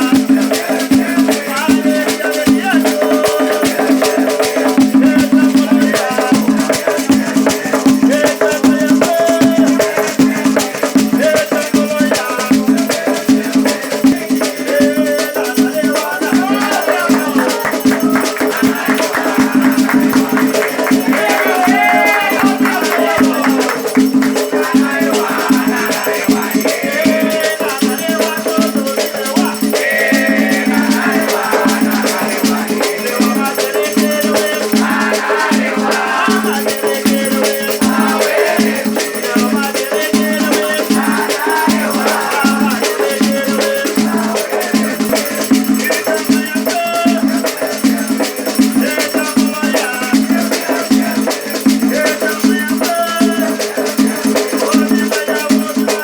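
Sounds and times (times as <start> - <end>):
shaken rattles: 0.0 - 35.2
percussion: 0.0 - 56.0
voices singing together: 0.0 - 56.0.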